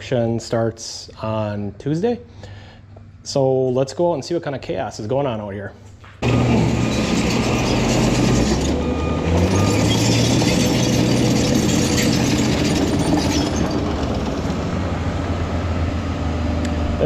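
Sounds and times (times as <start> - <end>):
diesel engines running: 6.0 - 17.0
metallic clatter: 6.2 - 8.8, 9.4 - 14.7.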